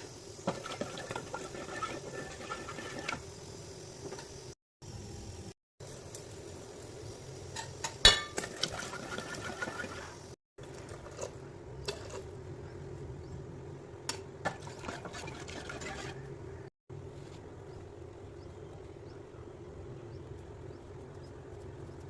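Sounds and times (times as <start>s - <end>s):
steady low hum: 16.2s - 22.0s.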